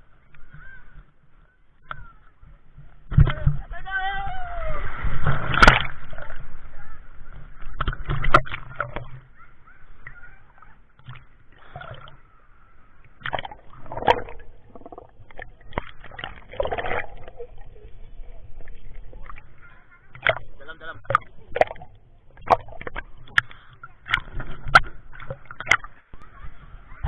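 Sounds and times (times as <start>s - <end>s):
water splashing and sloshing: 0.0s - 27.0s.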